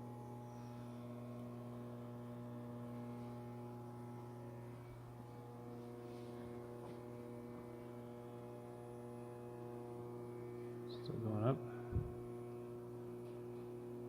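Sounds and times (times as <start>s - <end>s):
furnace electrical hum: 0.0s - 14.0s.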